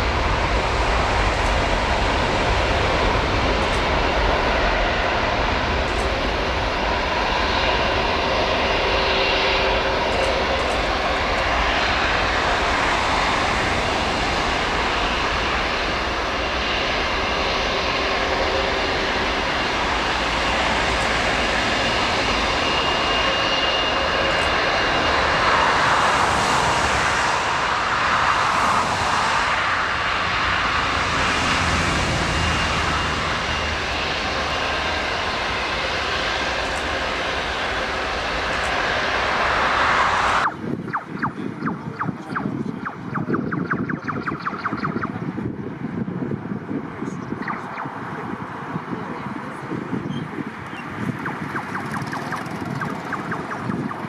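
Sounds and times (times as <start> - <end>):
jet engines rushing: 0.0 - 54.0
faint high whine: 47.0 - 54.0.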